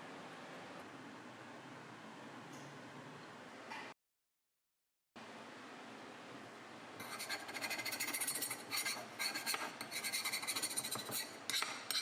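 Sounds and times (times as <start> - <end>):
abrasive scratching steel blade: 7.0 - 12.0.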